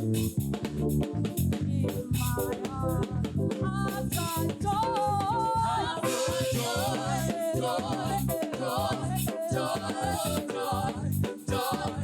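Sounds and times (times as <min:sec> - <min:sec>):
live band with bass and drums: 0:00.0 - 0:12.0
choir singing: 0:05.9 - 0:12.0.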